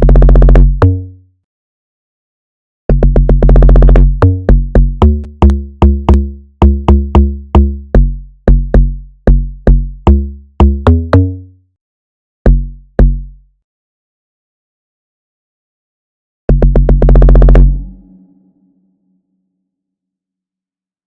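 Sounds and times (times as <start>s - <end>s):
electronic bass drum hits: 12.5s - 13.3s, 16.5s - 18.4s.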